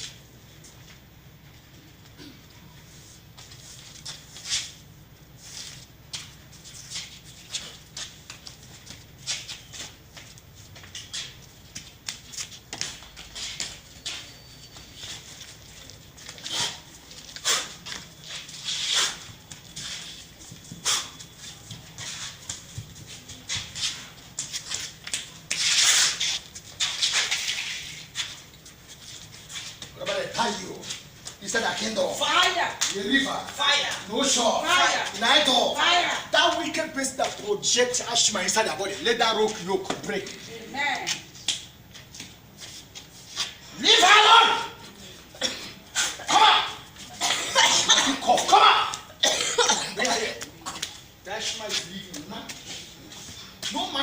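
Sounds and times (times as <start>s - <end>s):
woman coughing: 45.3s - 46.3s, 47.1s - 48.6s, 49.2s - 50.8s.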